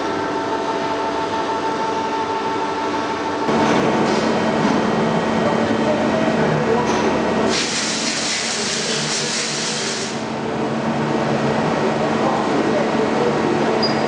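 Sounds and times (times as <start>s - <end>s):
machine hum: 0.0s - 14.0s
loud hiss: 7.5s - 10.2s.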